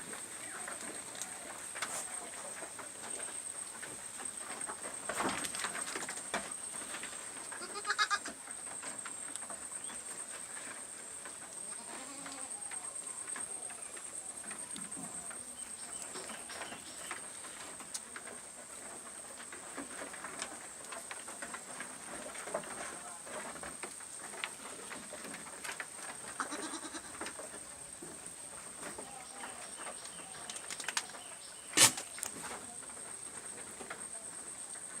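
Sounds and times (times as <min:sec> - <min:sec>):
rustling: 0:00.0 - 0:35.0
goats bleating: 0:07.6 - 0:08.4, 0:11.8 - 0:12.6, 0:26.4 - 0:27.2.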